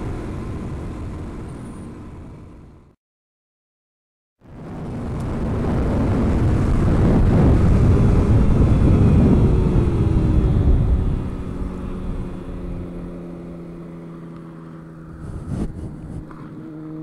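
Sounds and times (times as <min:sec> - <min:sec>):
motor vehicle passing by: 0:07.3 - 0:17.0.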